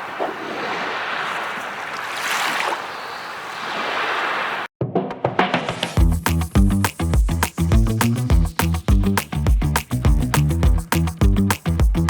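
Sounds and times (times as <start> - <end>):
water rushing: 0.0 - 4.7
music with a steady beat: 5.0 - 12.0.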